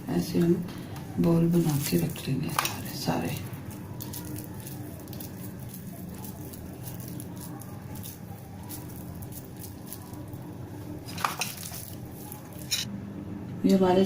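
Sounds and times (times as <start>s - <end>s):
low steady hum: 0.0s - 14.0s
hands squishing mashed potato: 1.6s - 12.8s.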